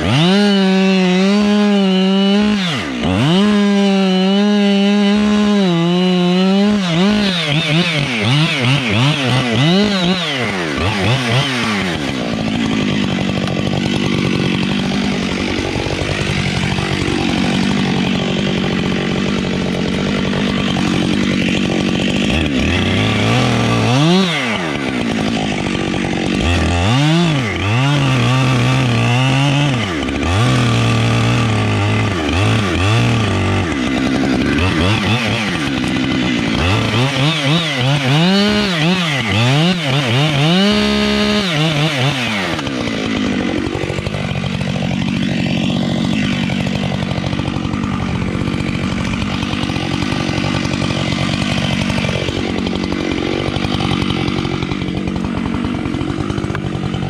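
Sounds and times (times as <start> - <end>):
chainsaw running: 0.0 - 57.0.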